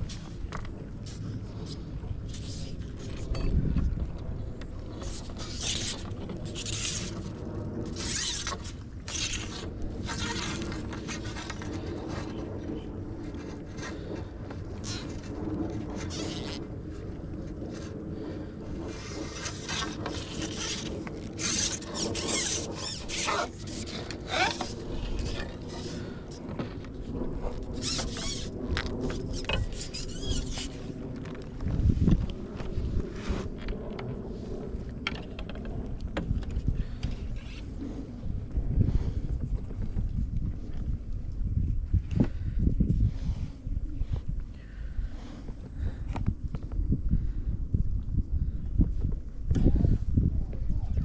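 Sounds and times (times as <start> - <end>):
low mechanical hum: 0.0 - 51.0
clicks and scrapes: 4.6 - 12.5, 18.8 - 32.3.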